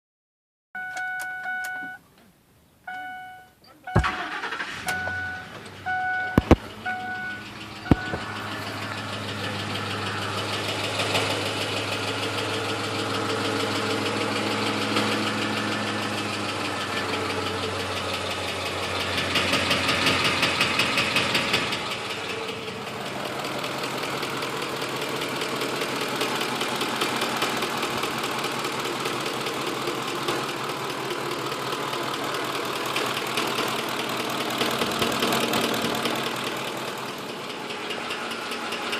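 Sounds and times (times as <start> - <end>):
vehicle chime beeping: 0.8 - 2.0, 2.9 - 10.4
engine running with fast ticking: 4.0 - 38.9
sharp clicks: 7.9 - 8.3.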